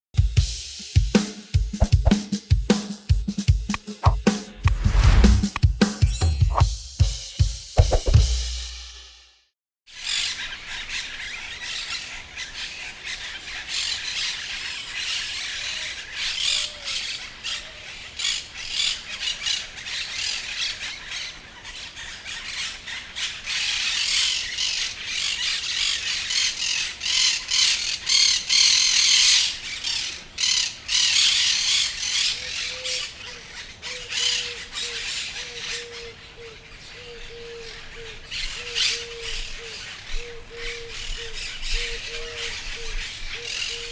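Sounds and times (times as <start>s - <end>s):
parrots squawking and chattering: 10.0s - 43.9s.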